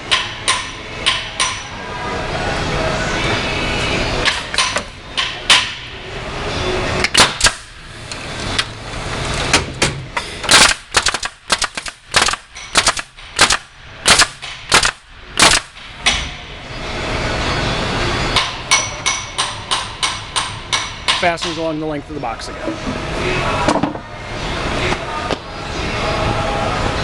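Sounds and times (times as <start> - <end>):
fastener drivers firing: 7.0 - 7.8, 9.5 - 16.2.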